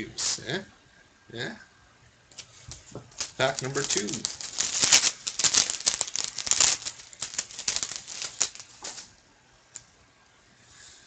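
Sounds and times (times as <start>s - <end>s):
wrapper crackling and rustling: 2.4s - 9.2s.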